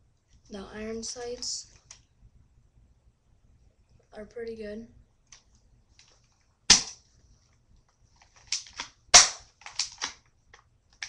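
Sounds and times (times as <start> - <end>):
airsoft pistol snap: 6.7 - 7.0, 8.5 - 10.2.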